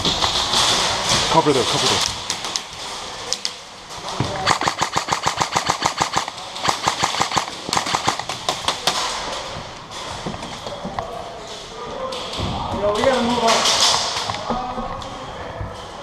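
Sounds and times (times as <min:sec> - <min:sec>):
airsoft guns firing bursts: 0:04.4 - 0:09.1.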